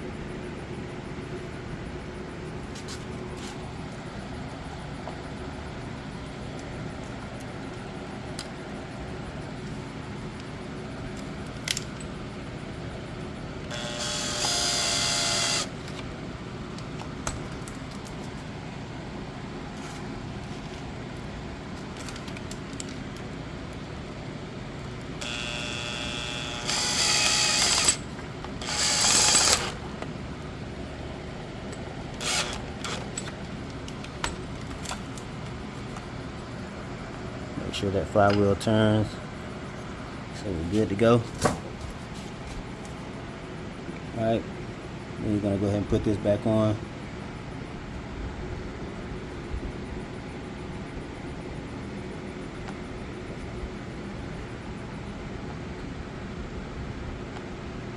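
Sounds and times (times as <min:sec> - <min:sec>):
background hum: 0:00.0 - 0:57.9
cordless drill whirring: 0:13.6 - 0:16.1, 0:25.1 - 0:30.2, 0:32.2 - 0:33.4.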